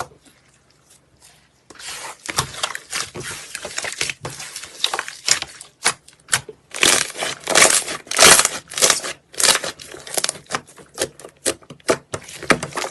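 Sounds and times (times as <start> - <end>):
crunching and crackling: 1.8 - 12.9.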